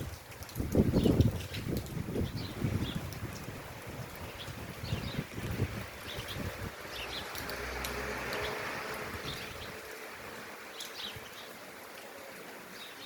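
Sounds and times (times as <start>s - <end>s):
wind rumbling on microphone: 0.0s - 10.3s
rain: 0.0s - 13.0s
wind: 0.0s - 13.0s.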